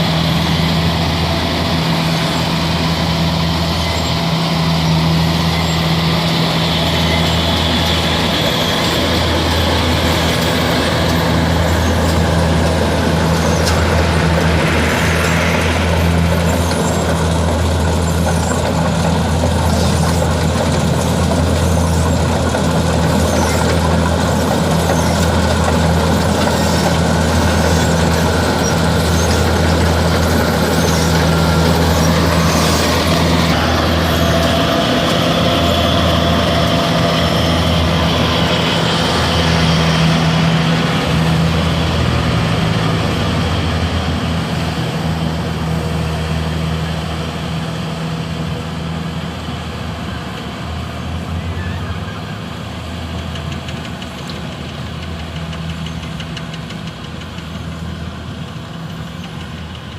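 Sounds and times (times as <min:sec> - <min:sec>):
combine harvester diesel engine drone: 0:00.0 - 0:59.9
harvester machinery noise: 0:00.0 - 0:59.9.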